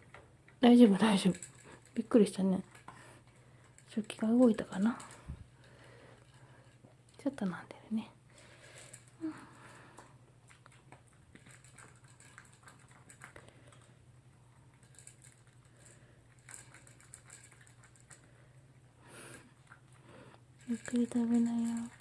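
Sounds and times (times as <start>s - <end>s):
faint low hum: 0.0s - 22.0s
dog chewing food: 10.3s - 14.0s.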